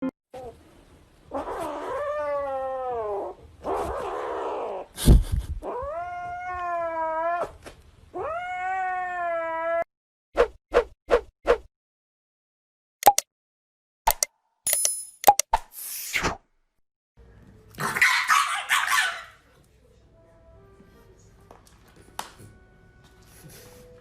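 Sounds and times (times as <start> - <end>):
cat yowling: 8.2 - 9.9.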